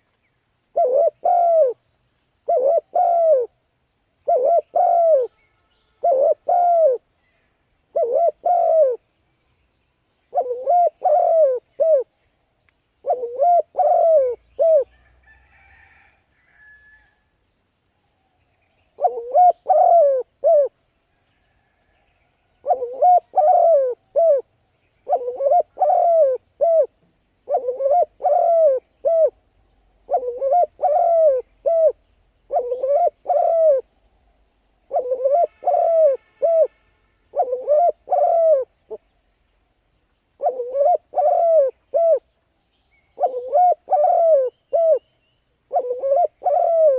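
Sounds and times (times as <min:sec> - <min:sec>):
dove cooing: 0:00.7 - 0:01.8, 0:02.4 - 0:03.6, 0:04.2 - 0:05.4, 0:06.0 - 0:07.1, 0:07.9 - 0:09.0, 0:10.3 - 0:12.1, 0:13.0 - 0:15.1, 0:19.0 - 0:20.8, 0:22.6 - 0:29.4, 0:30.0 - 0:33.9, 0:34.8 - 0:39.1, 0:40.4 - 0:42.3, 0:43.1 - 0:45.1, 0:45.7 - 0:46.9
small bird chirping: 0:04.2 - 0:15.1, 0:18.0 - 0:35.9, 0:37.4 - 0:46.9.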